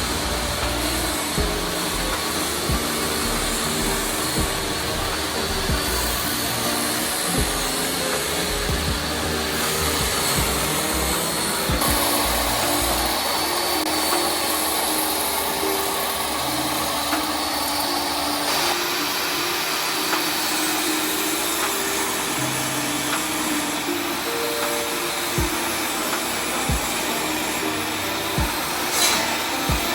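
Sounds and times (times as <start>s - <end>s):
background music: 0.0s - 29.9s
woodworking power tool running: 0.0s - 29.9s.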